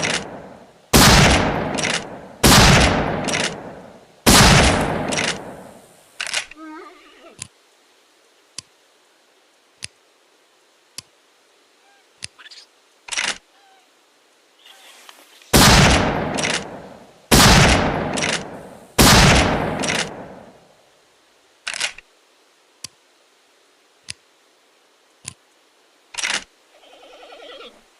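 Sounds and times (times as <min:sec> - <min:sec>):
rifle shots echoing: 0:00.0 - 0:05.8, 0:15.5 - 0:20.6
metallic rifle bolt clicks: 0:05.1 - 0:05.5.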